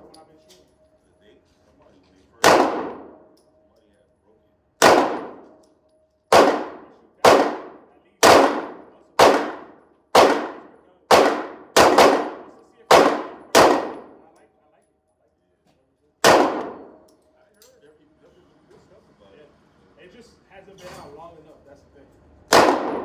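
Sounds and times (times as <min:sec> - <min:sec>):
handgun shots: 0:02.4 - 0:03.4, 0:04.8 - 0:05.6, 0:06.3 - 0:14.2, 0:16.2 - 0:17.1, 0:22.5 - 0:23.0.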